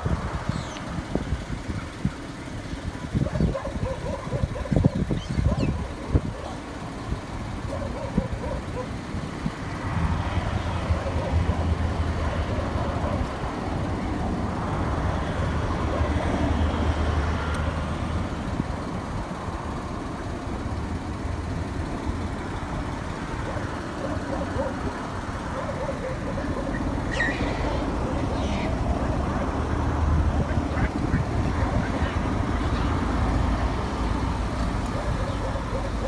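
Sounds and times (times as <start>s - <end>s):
road noise: 0.0s - 36.0s
vehicle engine running: 0.0s - 36.0s.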